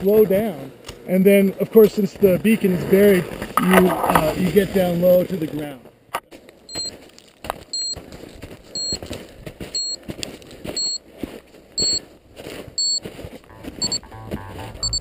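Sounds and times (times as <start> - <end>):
scuffing noises: 1.7 - 15.0
transceiver high beeps: 6.7 - 7.0, 7.7 - 8.0, 8.8 - 9.0, 9.7 - 10.0, 10.8 - 11.0, 11.8 - 12.0, 12.8 - 15.0.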